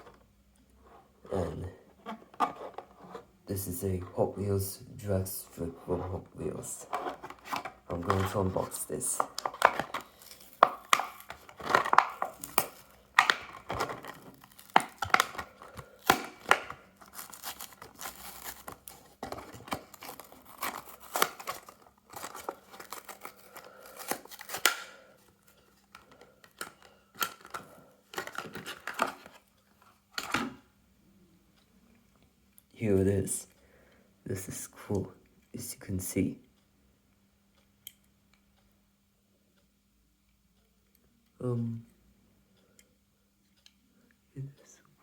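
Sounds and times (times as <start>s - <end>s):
plastic blister crinkling: 6.4s - 29.4s
cardboard tearing: 9.4s - 24.8s.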